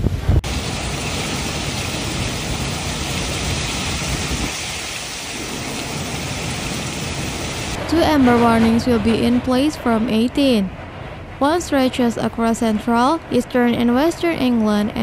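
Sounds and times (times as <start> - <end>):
heavy rain: 0.1 - 8.0.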